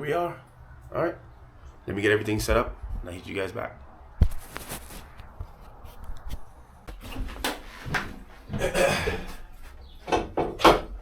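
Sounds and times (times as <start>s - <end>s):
handling knocks and clicks: 4.2s - 11.0s
rustling: 4.2s - 11.0s.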